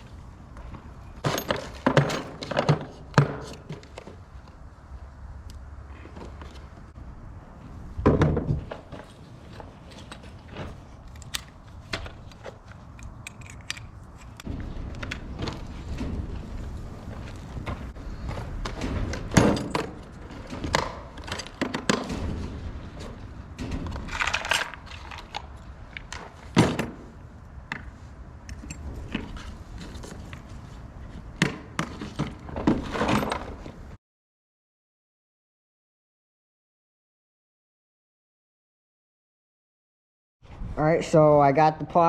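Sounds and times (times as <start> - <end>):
metal tools clanking and rattling: 1.2 - 2.7.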